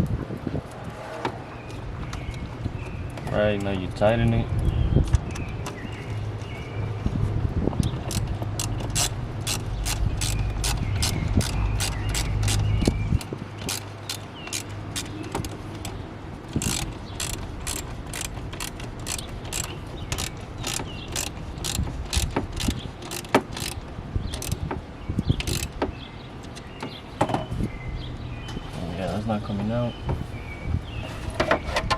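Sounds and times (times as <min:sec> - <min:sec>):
ratchet wrench clicking: 0:08.0 - 0:24.6, 0:25.4 - 0:25.8.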